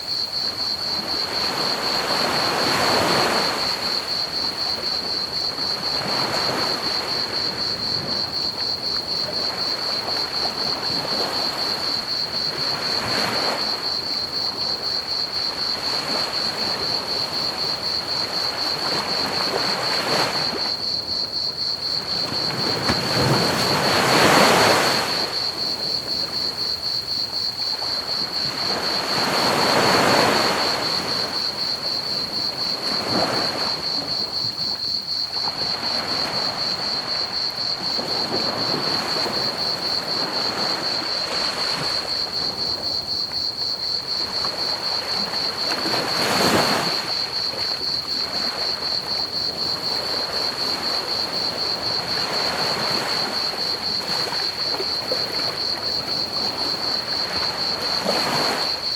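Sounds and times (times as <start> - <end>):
crickets trilling: 0.0 - 58.9
ocean waves breaking on beach: 22.0 - 26.9, 27.5 - 43.1, 44.1 - 58.9.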